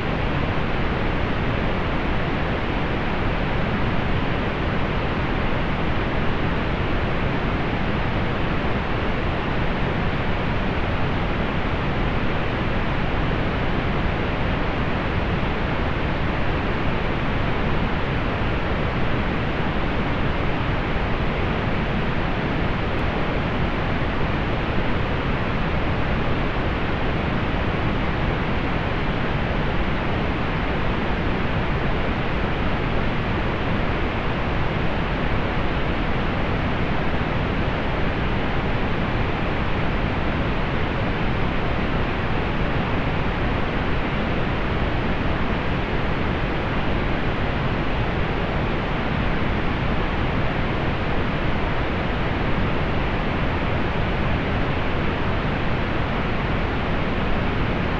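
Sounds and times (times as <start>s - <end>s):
pink noise hiss: 0.0s - 57.9s.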